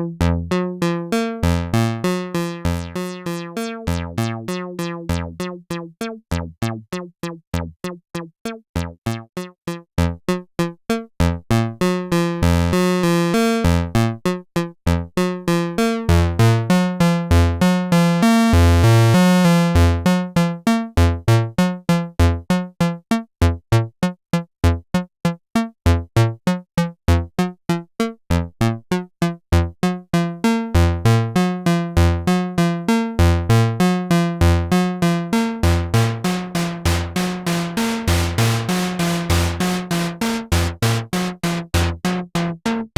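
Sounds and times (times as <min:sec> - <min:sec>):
synthesizer bass sequence: 0:34.6 - 0:42.9.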